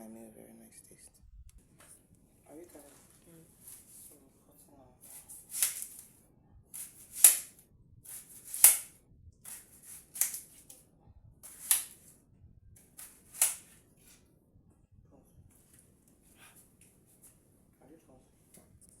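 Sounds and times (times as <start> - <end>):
kitchen knife chopping: 5.1 - 6.1, 6.8 - 10.8, 11.4 - 12.1, 12.8 - 13.8.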